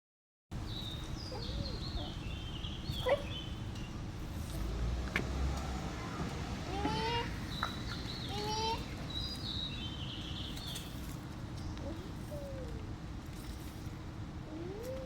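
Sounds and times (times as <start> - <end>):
birds chirping: 0.6 - 4.1, 5.9 - 11.0.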